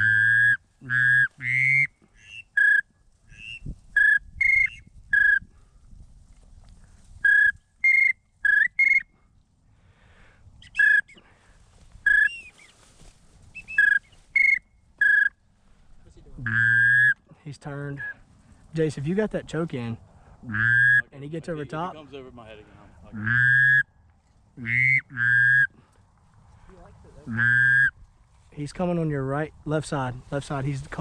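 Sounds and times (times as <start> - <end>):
duck whistle call peeps: 0.0 - 5.5, 7.2 - 9.1, 10.6 - 11.2, 12.0 - 12.6, 13.6 - 15.3, 16.5 - 17.2, 20.5 - 21.0, 23.2 - 23.9, 24.6 - 25.7, 27.3 - 28.0.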